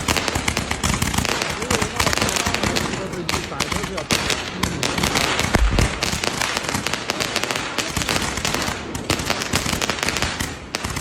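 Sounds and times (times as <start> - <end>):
fireworks cracking and popping: 0.0 - 11.0
deep firework thump: 5.4 - 6.6.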